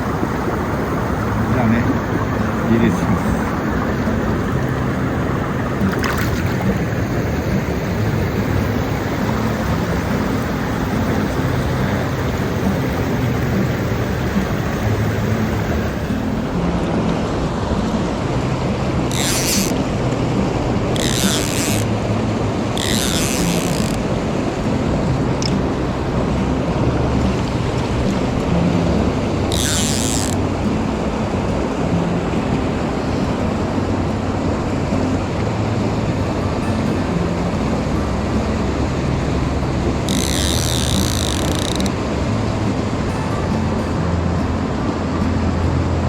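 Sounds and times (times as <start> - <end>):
rushing water: 0.0 - 46.0
short high rasping sounds: 19.1 - 19.8, 21.0 - 22.0, 22.8 - 24.8, 29.5 - 30.4, 40.0 - 41.9.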